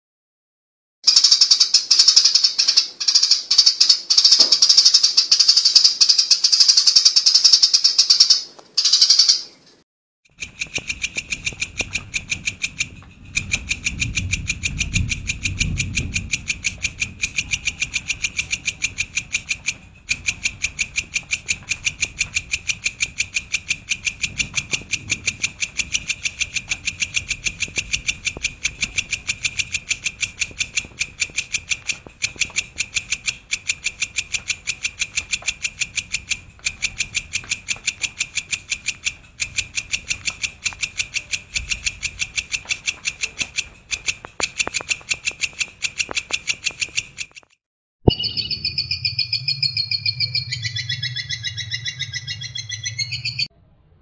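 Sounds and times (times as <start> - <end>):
rapid sharp high bird notes: 1.1 - 9.6, 48.1 - 53.5
songbird singing: 1.1 - 9.6, 48.1 - 53.5.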